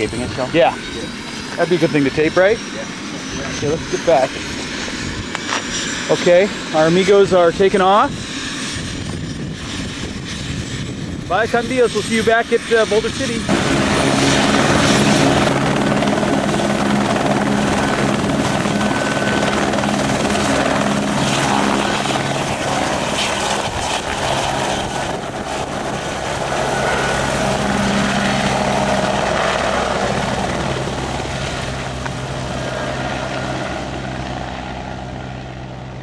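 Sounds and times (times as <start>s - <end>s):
helicopter engine and rotor: 0.0s - 36.0s.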